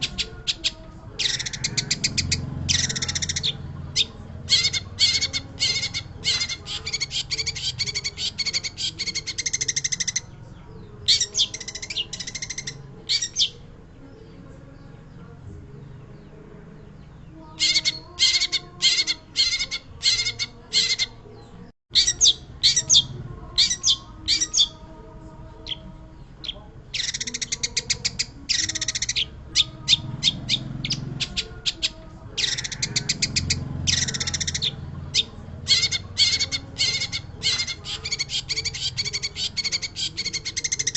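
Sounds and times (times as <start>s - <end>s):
shrike harsh chattering song: 0.0s - 13.7s, 16.8s - 21.3s, 21.9s - 24.9s, 25.5s - 40.9s.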